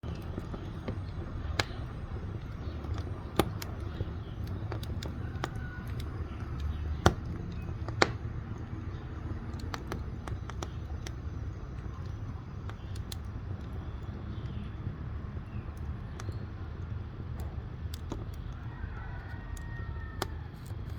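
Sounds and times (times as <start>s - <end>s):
firewood crackling and popping: 0.0s - 20.9s
low rumble of flame: 0.0s - 20.9s.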